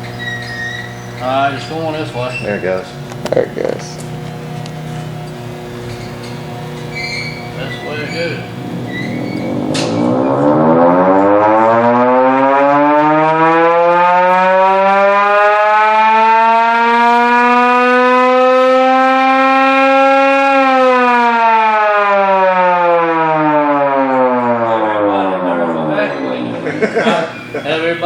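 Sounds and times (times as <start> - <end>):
electric siren wailing: 5.8 - 28.0.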